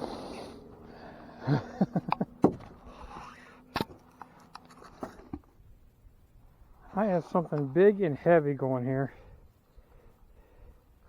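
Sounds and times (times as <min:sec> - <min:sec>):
faint scraping: 0:06.7 - 0:08.4.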